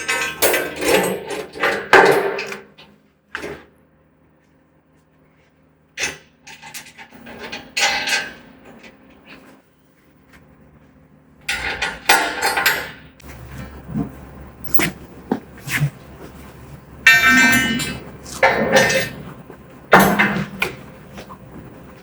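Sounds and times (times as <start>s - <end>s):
metal parts rattling and scraping: 11.5s - 22.0s
parts and tools knocking and clattering: 11.5s - 22.0s.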